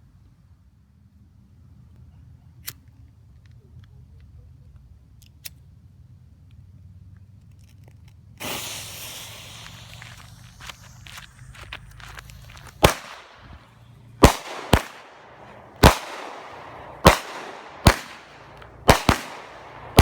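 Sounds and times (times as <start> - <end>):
firework hiss: 8.4 - 20.0
sharp pops: 8.4 - 20.0.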